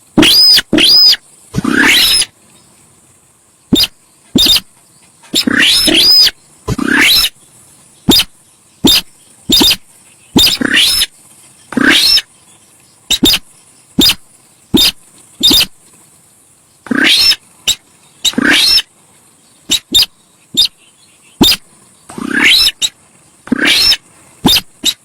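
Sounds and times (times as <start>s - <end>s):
bird calling loudly: 0.2s - 2.3s, 3.7s - 7.4s, 8.1s - 12.3s, 13.1s - 15.8s, 16.8s - 18.9s, 19.7s - 25.0s.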